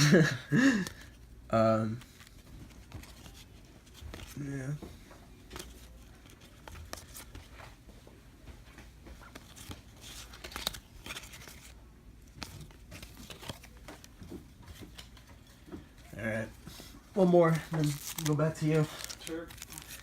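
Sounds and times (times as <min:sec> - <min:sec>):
wrapper tearing and crinkling: 0:17.5 - 0:20.0.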